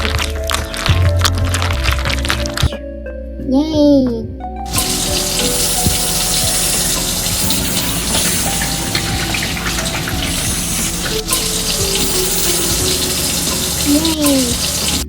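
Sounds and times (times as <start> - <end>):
soft background music: 0.0 - 15.0
tap water running into sink: 4.7 - 15.0.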